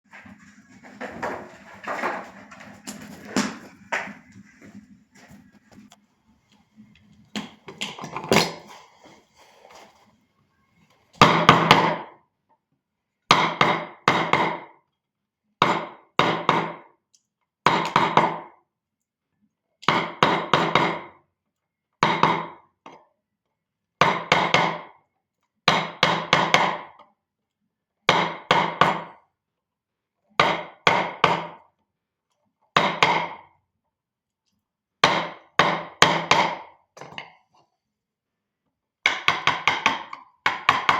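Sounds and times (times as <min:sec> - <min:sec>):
mallet tapping chisel into wood: 0:39.1 - 0:40.9.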